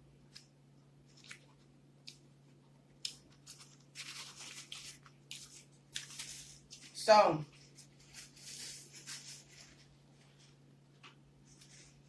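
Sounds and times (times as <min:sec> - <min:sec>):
crispy chicken skin crackling: 0:03.0 - 0:07.0.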